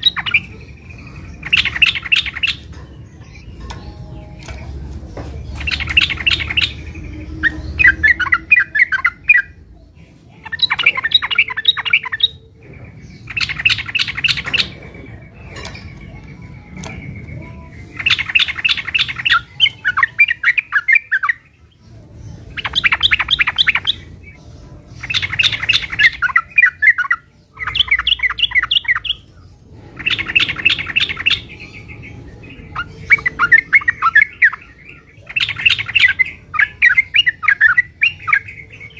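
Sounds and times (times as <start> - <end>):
bird chattering song: 0.0 - 38.9.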